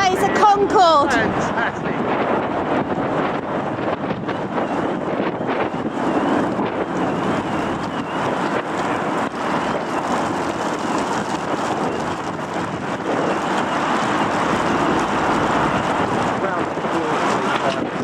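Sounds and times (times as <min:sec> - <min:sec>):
wind gusting over microphone: 0:00.0 - 0:18.0
car alarm siren warbling: 0:04.1 - 0:16.3.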